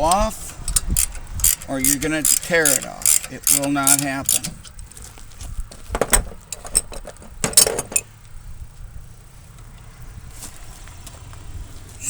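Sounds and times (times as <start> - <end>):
metal tools clinking: 0.0 - 8.1.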